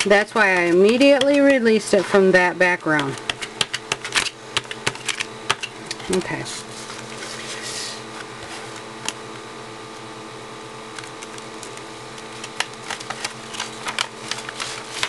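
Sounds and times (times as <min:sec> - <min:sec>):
electric fan humming: 0:00.0 - 0:15.0
paper crinkling: 0:11.0 - 0:15.0.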